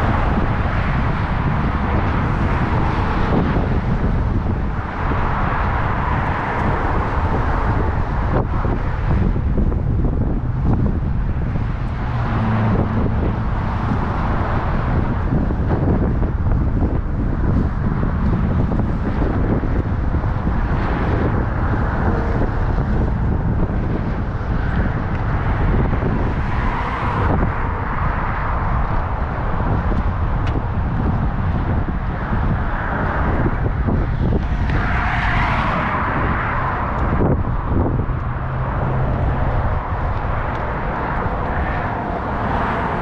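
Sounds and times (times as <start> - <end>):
freeway traffic rushing: 0.0 - 43.0
vehicles passing: 0.0 - 43.0
wind buffeting microphone: 0.0 - 43.0.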